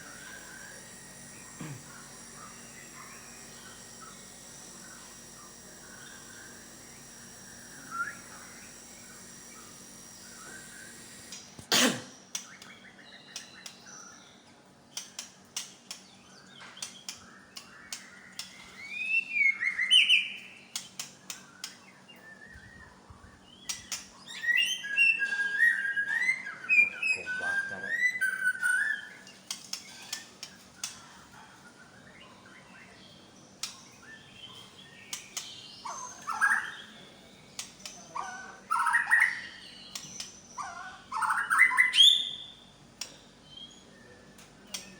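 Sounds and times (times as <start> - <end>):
sharp clicks: 0.0 - 11.7, 37.6 - 38.0
songbird whistling: 7.8 - 8.7, 17.2 - 20.6, 23.6 - 29.2, 38.0 - 42.6.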